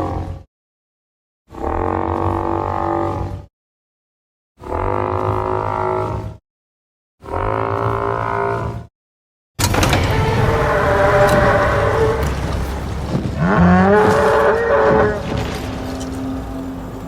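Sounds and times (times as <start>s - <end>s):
low resonant dinosaur honks: 10.0s - 17.0s.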